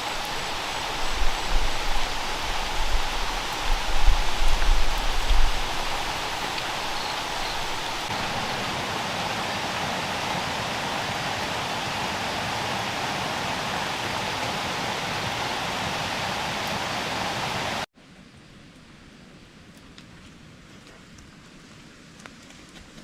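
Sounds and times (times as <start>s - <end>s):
heavy rain falling: 0.0s - 17.9s
faint drip-like ticks: 19.7s - 22.7s.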